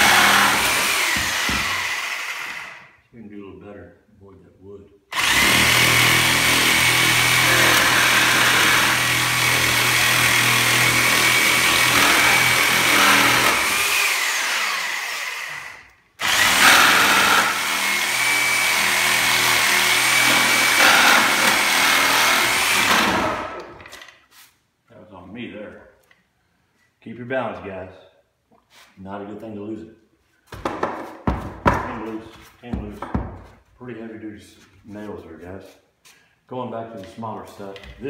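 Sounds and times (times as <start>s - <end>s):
reciprocating saw cutting wood: 0.0s - 2.9s, 5.2s - 23.7s.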